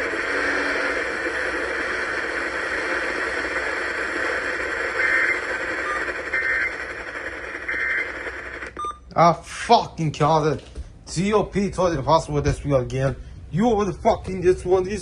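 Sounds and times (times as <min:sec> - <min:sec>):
broadcast hiss: 0:00.0 - 0:08.8
data tone bursts: 0:04.8 - 0:09.0.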